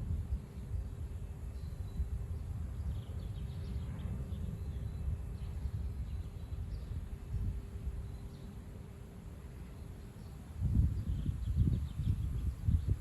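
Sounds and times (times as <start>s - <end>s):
strong wind buffeting microphone: 0.0s - 13.0s
faint bird chirps: 0.4s - 13.0s.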